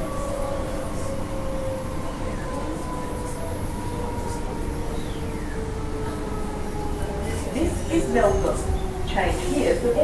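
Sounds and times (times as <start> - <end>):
train rumble: 6.1 - 10.0.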